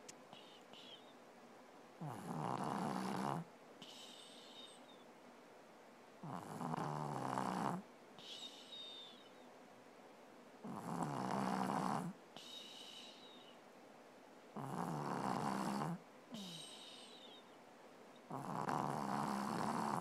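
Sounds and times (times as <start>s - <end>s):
person snoring: 14.6s - 17.1s, 18.3s - 20.0s.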